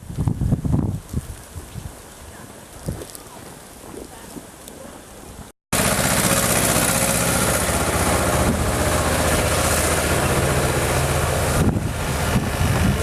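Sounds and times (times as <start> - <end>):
wind rushing across microphone: 0.0 - 4.6, 7.8 - 10.0, 10.6 - 13.0.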